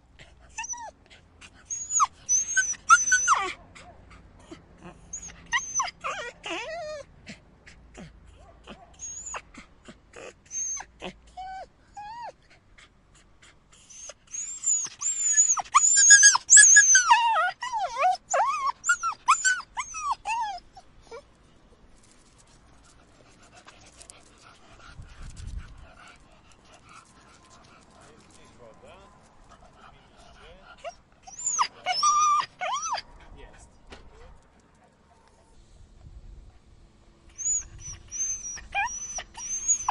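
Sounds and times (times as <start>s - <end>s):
puppy whimpering and crying: 0.5s - 3.6s, 4.4s - 7.1s, 8.7s - 9.5s, 10.2s - 12.4s, 13.8s - 21.2s, 30.7s - 33.1s, 37.4s - 39.9s.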